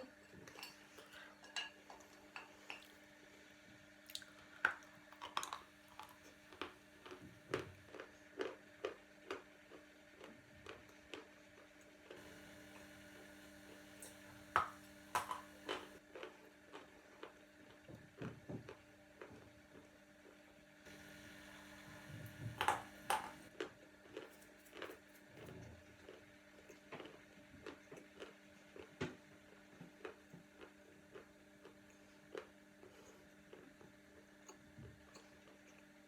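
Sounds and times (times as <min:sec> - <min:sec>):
faint steady hum: 0:00.0 - 0:36.0
crisp chewing crunches: 0:04.1 - 0:12.2, 0:22.6 - 0:35.9.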